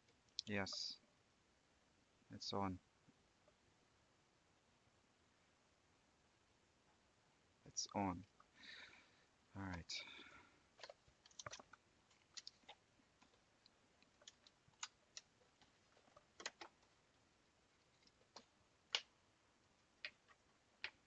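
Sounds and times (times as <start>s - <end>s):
faint clicks and taps: 9.6s - 19.2s, 19.8s - 21.0s.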